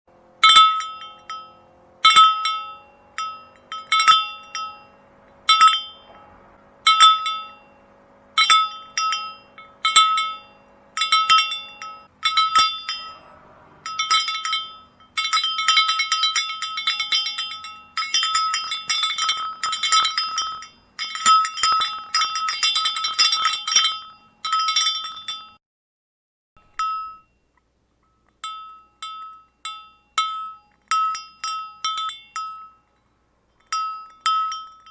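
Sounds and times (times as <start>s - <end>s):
cowbells clanking: 0.2s - 25.6s, 26.6s - 34.9s.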